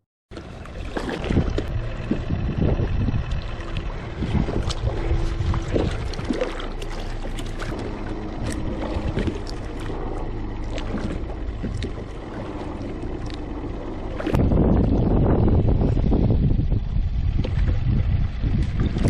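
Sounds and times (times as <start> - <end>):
small splashes: 0.3 - 15.1
water lapping against kayak hull: 0.3 - 19.0
wind rumble on microphone: 0.3 - 19.0.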